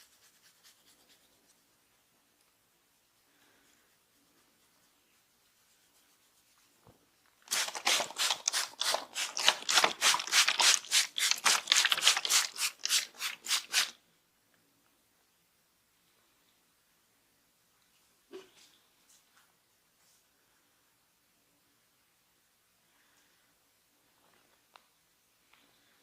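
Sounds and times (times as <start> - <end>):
hands rubbing hair: 0.0 - 1.8, 3.4 - 6.8, 7.5 - 14.0.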